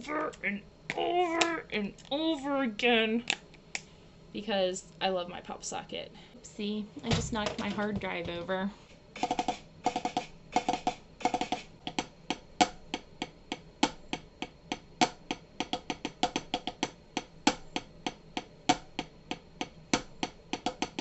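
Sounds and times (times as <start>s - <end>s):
drumming taps on hard surface: 9.2s - 21.0s.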